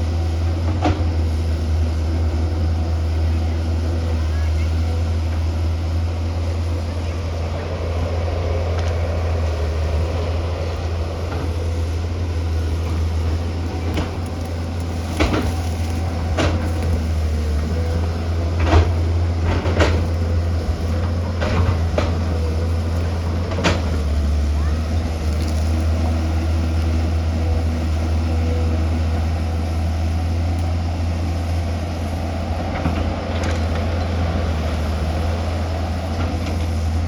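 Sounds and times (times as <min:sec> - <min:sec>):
excavator diesel engine humming: 0:00.0 - 0:37.0.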